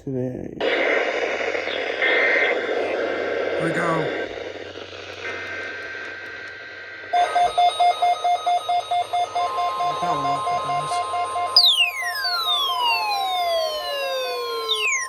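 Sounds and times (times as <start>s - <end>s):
rapid pulsing alarm beeps: 7.0s - 15.0s
steady warning alarm tone: 7.0s - 15.0s.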